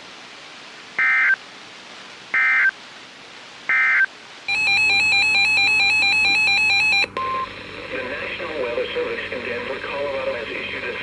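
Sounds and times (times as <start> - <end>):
warbling digital data tones: 1.0 - 1.4, 3.7 - 7.1.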